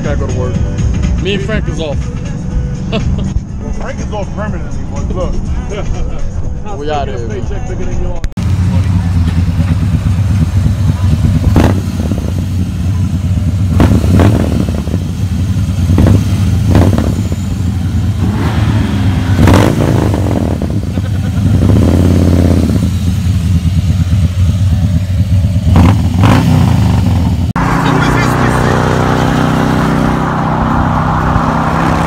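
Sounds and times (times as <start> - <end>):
motorcycle engine running: 8.4 - 32.0.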